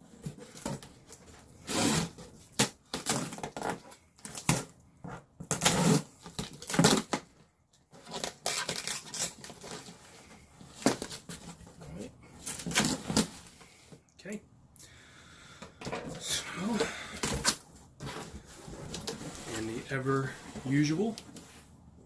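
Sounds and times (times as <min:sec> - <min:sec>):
cardboard box tearing and crinkling: 0:01.6 - 0:04.7, 0:05.5 - 0:07.3, 0:08.0 - 0:10.0, 0:12.4 - 0:13.5.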